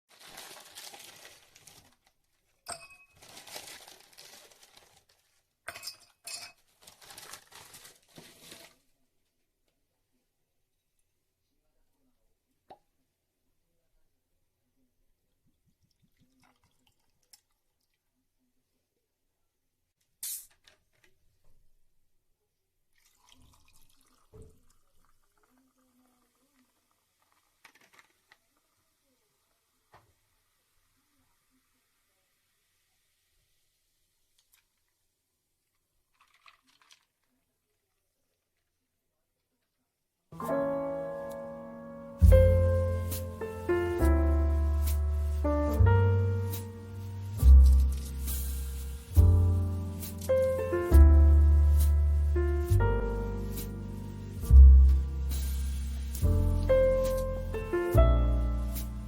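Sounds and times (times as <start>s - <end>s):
rustling handling noise: 0.1s - 8.9s, 42.2s - 57.8s
glassware clinking: 2.7s - 3.2s, 5.7s - 6.6s.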